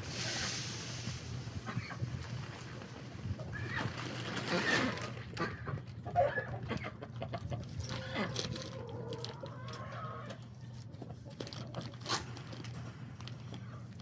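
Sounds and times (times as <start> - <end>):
chickens clucking: 3.3 - 12.0.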